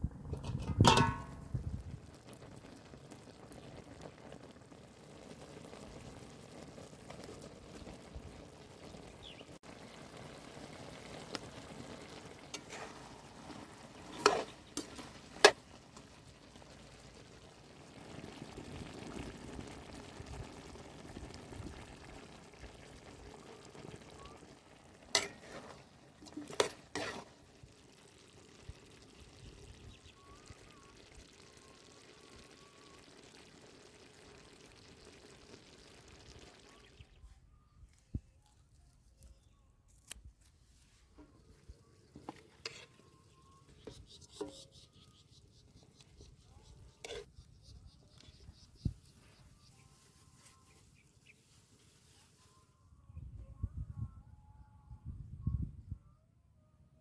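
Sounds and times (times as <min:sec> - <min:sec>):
sauce bubbling in a pan: 0:00.2 - 0:37.2, 0:41.7 - 0:49.8
utensil clinking against pan: 0:00.4 - 0:01.4.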